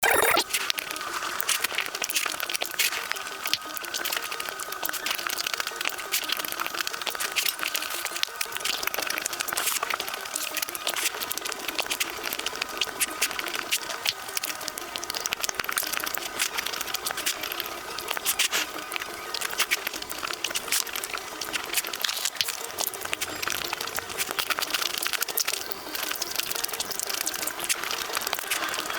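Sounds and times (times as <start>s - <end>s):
close-miked biting and chewing: 0.0s - 0.5s.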